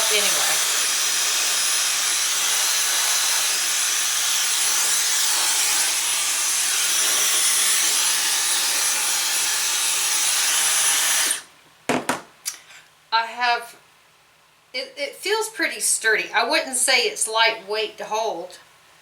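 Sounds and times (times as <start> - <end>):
hair dryer blowing: 0.0 - 11.5.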